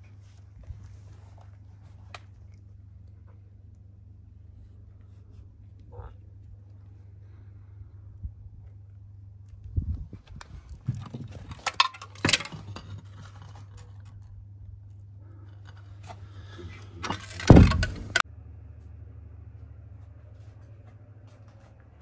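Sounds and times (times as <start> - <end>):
metal parts clinking and clanking: 11.0 - 14.2, 17.0 - 18.2.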